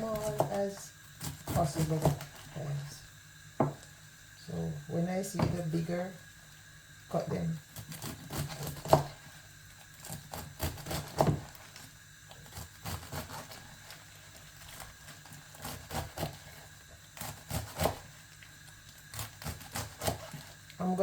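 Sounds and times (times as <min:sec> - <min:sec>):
knife chopping on cutting board: 0:00.0 - 0:02.3, 0:03.6 - 0:03.8, 0:05.4 - 0:05.6, 0:07.8 - 0:09.2, 0:10.0 - 0:11.5, 0:17.2 - 0:18.1, 0:19.1 - 0:20.4.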